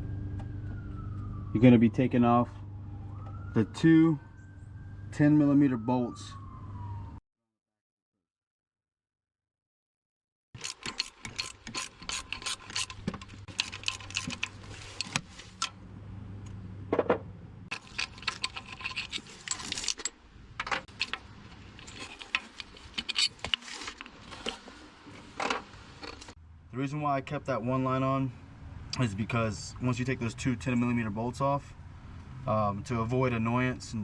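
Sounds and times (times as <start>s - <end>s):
ratchet clicking: 10.6s - 15.7s.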